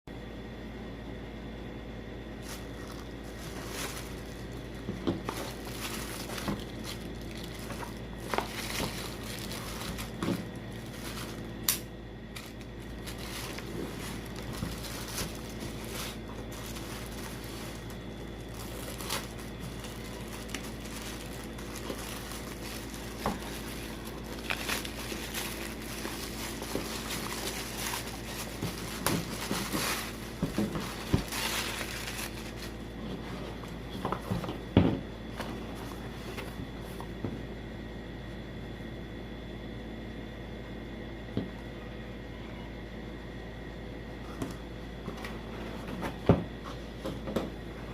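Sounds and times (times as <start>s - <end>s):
steady low hum: 0.1s - 47.9s
packaging crinkling and rustling: 2.4s - 37.0s.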